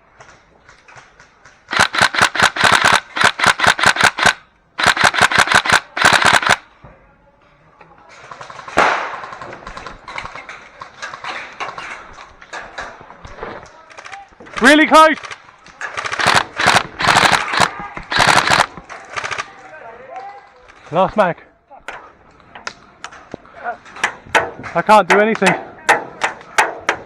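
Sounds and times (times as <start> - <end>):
airsoft guns firing full auto: 1.7 - 6.6, 8.3 - 10.2, 14.6 - 19.5.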